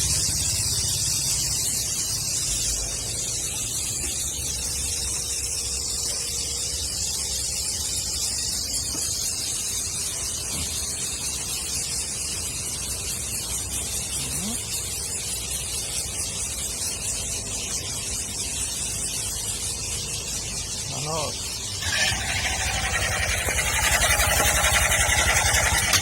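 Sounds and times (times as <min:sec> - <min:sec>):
scooter engine running: 0:00.0 - 0:01.5, 0:21.8 - 0:26.0.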